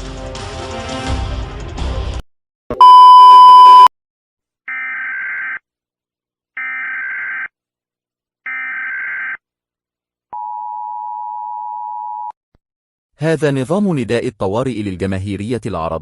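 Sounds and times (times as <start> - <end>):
loud electronic beep: 2.7 - 3.9.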